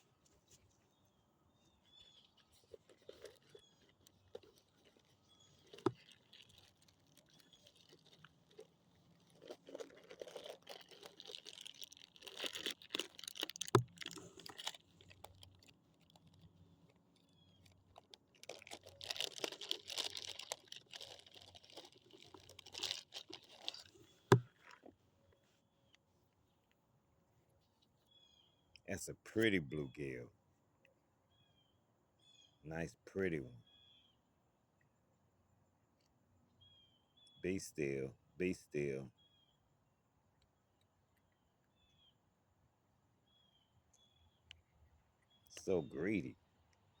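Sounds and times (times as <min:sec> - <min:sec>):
rustling and crackling handling noise: 0:00.0 - 0:26.9.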